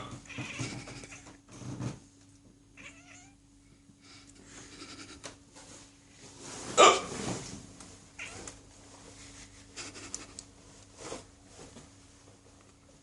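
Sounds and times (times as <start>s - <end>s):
cat meowing: 2.8s - 3.4s
man hiccuping: 6.8s - 7.1s.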